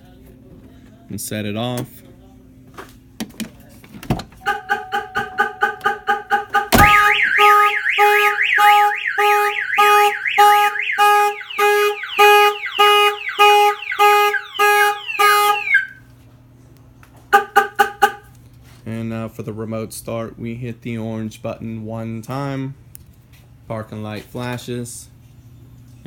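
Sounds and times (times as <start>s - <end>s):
car alarm siren: 4.4s - 16.0s, 17.3s - 18.3s
short alarm chirps: 6.8s - 16.0s.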